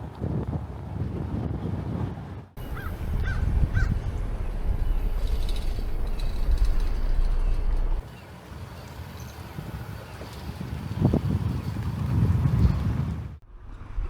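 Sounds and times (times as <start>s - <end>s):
wind rumbling on microphone: 0.0s - 8.2s, 8.8s - 14.0s
bird calls: 2.6s - 9.4s.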